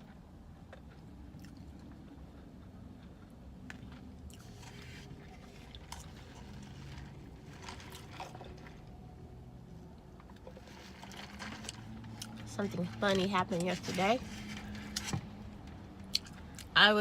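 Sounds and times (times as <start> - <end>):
person chewing: 0.0 - 8.7, 10.4 - 12.4, 16.0 - 16.7
faint clicks and scrapes: 1.7 - 9.0, 10.2 - 15.8.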